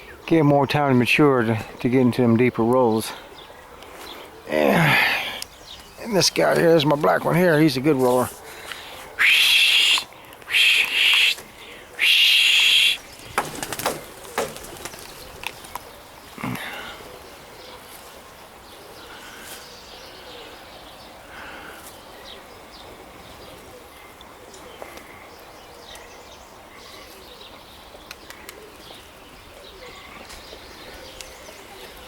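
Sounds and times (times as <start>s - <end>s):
pigeons cooing: 8.4s - 32.0s
bird chirps: 9.2s - 17.9s.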